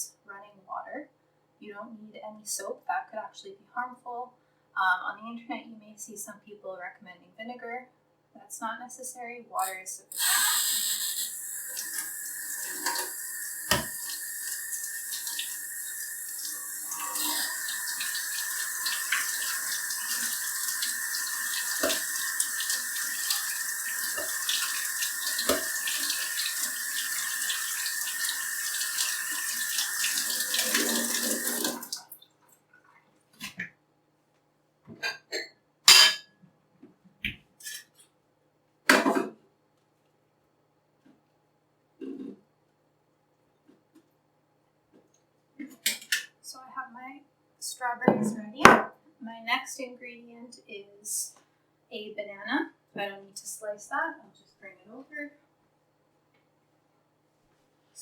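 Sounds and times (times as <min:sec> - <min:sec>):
tap water running into sink: 0:10.1 - 0:32.2.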